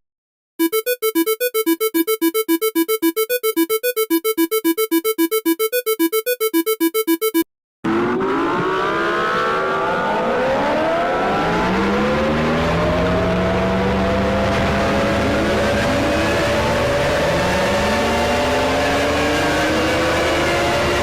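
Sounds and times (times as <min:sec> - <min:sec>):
sliding alarm tones: 0:00.6 - 0:07.4.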